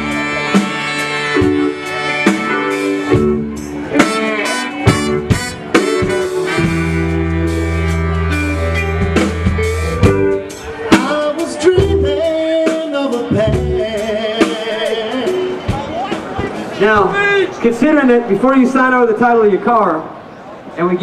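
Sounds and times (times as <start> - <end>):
blues band playing: 0.0 - 20.7
person singing: 10.0 - 15.7.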